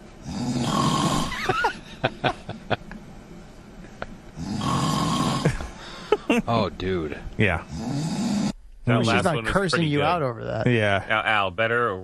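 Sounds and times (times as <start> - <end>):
man snoring loudly: 0.2 - 1.8, 4.4 - 5.8, 7.6 - 8.6.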